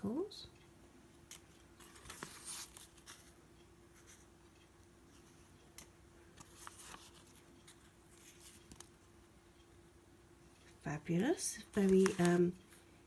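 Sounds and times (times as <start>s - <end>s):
faint steady hum: 0.0s - 13.0s
paper rustling: 1.8s - 3.3s, 6.4s - 8.9s, 11.8s - 12.5s.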